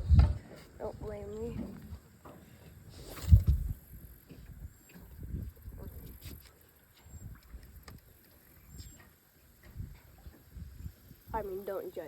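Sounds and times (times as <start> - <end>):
heavy low thump: 0.0 - 0.4.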